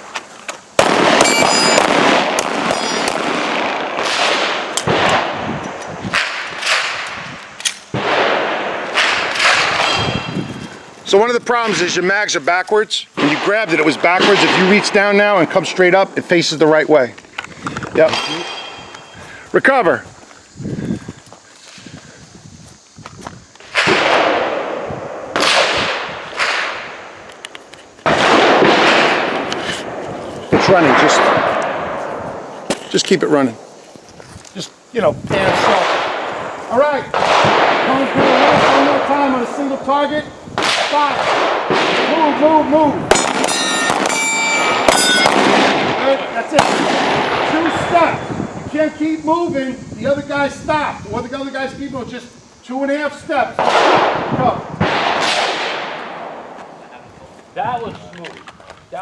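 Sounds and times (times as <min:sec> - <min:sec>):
handgun shots: 0:00.8 - 0:05.2, 0:43.1 - 0:45.8.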